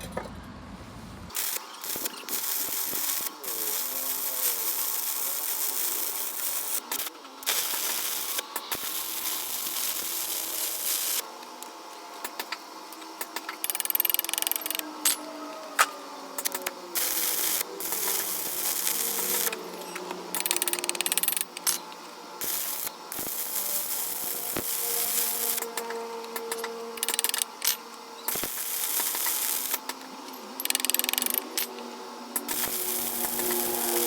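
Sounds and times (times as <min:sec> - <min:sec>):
welding arc crackling: 0:01.3 - 0:11.3, 0:15.8 - 0:21.8, 0:22.4 - 0:27.6, 0:28.3 - 0:30.0, 0:30.6 - 0:31.6, 0:32.3 - 0:34.0.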